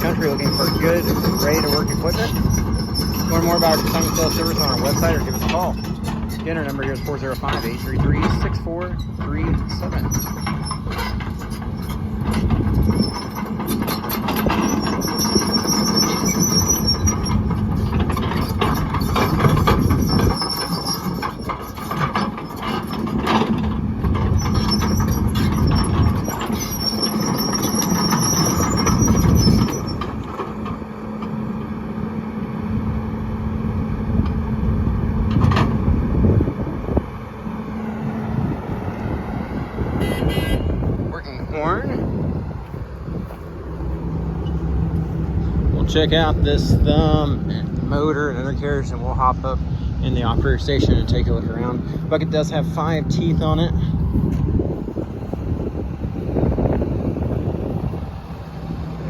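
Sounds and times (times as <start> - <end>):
high-pitched metallic squeal: 0.0 - 23.1, 24.3 - 30.1, 39.8 - 43.4
excavator diesel engine: 0.0 - 59.0.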